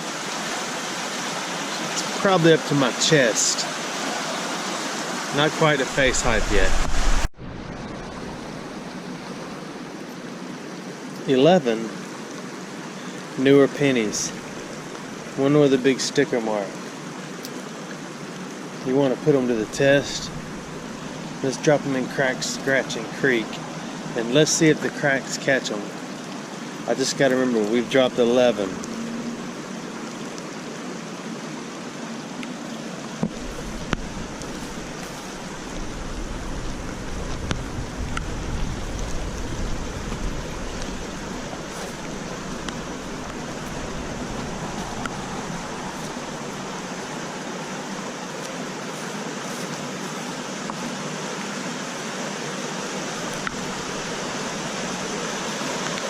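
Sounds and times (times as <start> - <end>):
floodwater rushing in creek: 0.0 - 56.0.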